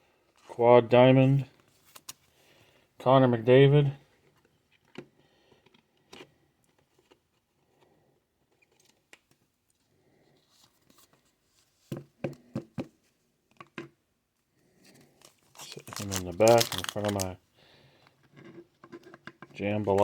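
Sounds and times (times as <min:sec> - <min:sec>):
trading cards rustling: 0:14.8 - 0:17.4.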